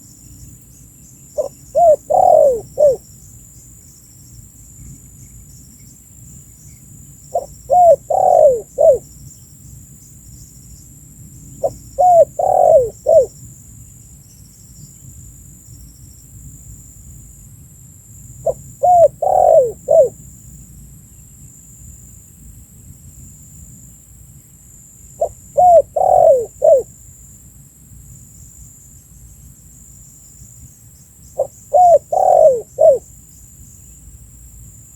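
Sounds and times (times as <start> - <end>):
dove cooing: 1.4 - 3.0, 7.3 - 9.1, 11.6 - 13.3, 18.4 - 20.2, 25.2 - 26.9, 31.4 - 33.0.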